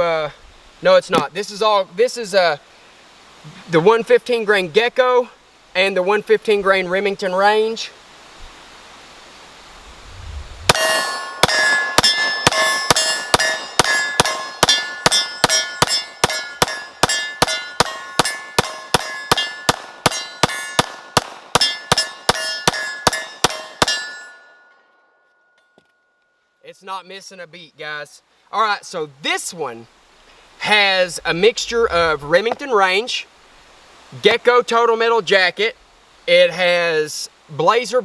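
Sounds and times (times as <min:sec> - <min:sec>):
bullets clanging on steel target: 0:10.7 - 0:21.0, 0:21.6 - 0:24.8.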